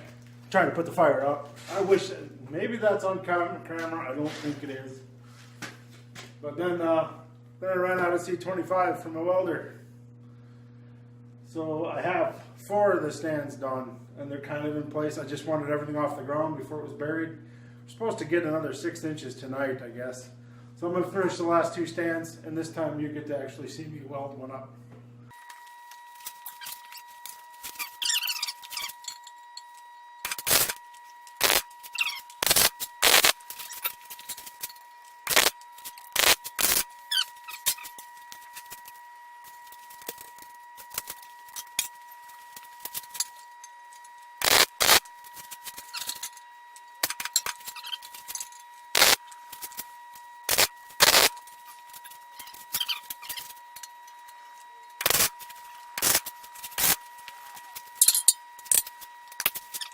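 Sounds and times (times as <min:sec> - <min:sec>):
welding arc crackling: 0:30.2 - 0:38.9, 0:39.6 - 0:43.4, 0:44.4 - 0:46.4, 0:47.0 - 0:49.9, 0:50.5 - 0:53.6, 0:55.0 - 0:59.9.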